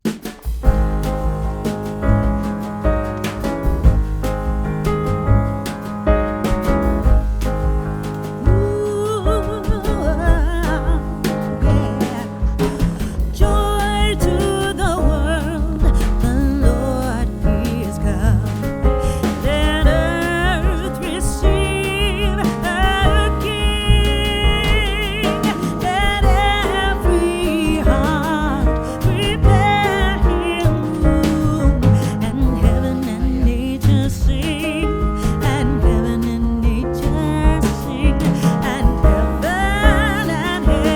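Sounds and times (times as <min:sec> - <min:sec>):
song with vocals and steady beat: 0:08.4 - 0:40.9.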